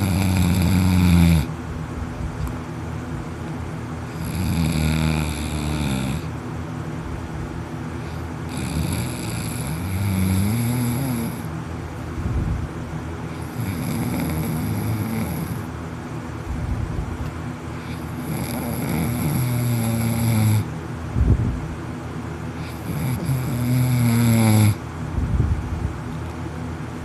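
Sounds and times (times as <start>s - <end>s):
man snoring loudly: 0.0s - 1.6s, 4.0s - 6.3s, 8.1s - 11.5s, 13.3s - 15.7s, 17.8s - 20.7s, 22.6s - 24.8s.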